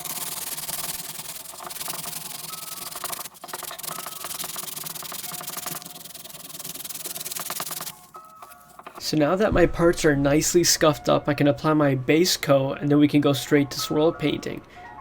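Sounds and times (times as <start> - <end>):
sandpaper rubbing: 0.0 - 9.0.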